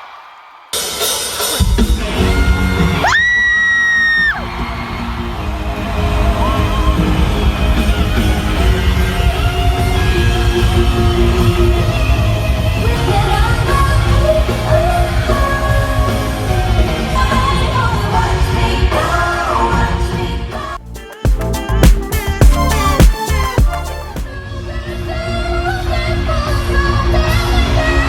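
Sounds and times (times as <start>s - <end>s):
loud pop music with bass: 0.8s - 28.0s
person singing: 17.2s - 28.0s.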